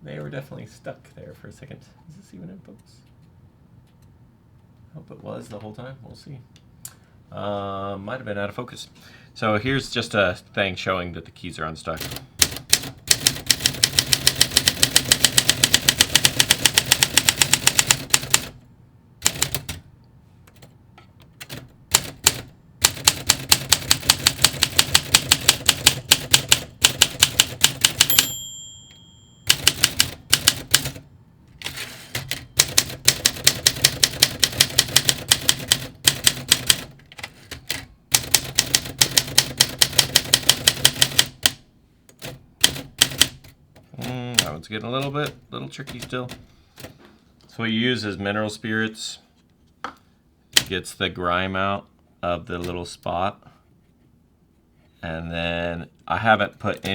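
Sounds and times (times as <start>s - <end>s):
typewriter keys clicking: 12.0s - 18.5s, 21.4s - 28.3s, 29.5s - 31.0s, 31.6s - 43.6s
typewriter margin bell ringing: 27.8s - 30.2s.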